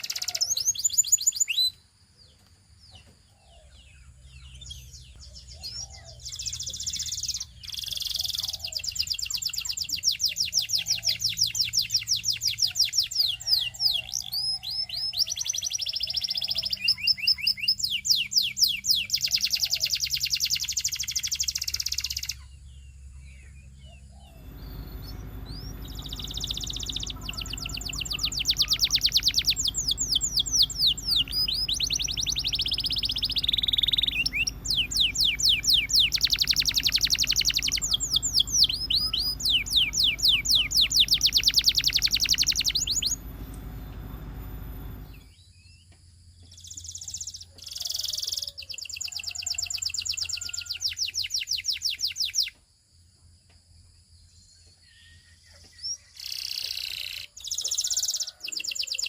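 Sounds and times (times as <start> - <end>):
canary singing trills: 0.0 - 45.4, 54.9 - 59.0
steady low hum: 23.0 - 45.5.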